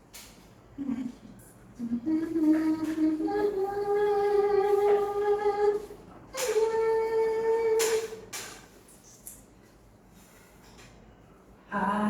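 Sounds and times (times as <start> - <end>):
woman singing long held notes: 1.8 - 8.3, 11.7 - 12.0.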